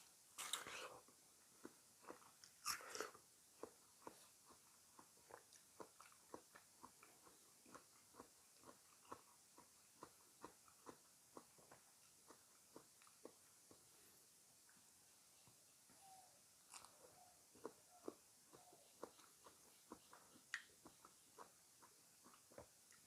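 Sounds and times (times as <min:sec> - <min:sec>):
crisp bite into fruit: 0:00.4 - 0:00.9
close-up chewing: 0:00.4 - 0:14.8, 0:15.4 - 0:23.0.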